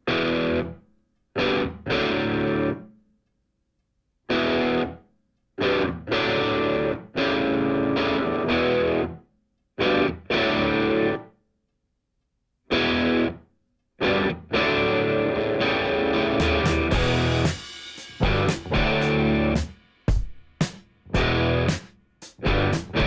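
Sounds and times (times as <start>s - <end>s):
distorted electric guitar chords: 1.4s - 2.8s, 5.6s - 9.2s, 9.8s - 11.2s, 12.8s - 13.4s, 14.0s - 19.7s, 21.2s - 21.8s, 22.4s - 23.0s.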